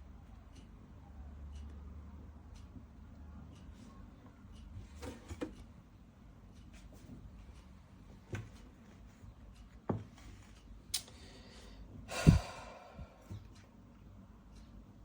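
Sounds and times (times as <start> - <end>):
faint clicks and knocks: 0.1 - 11.2
breathy burst with low thump: 12.1 - 12.7.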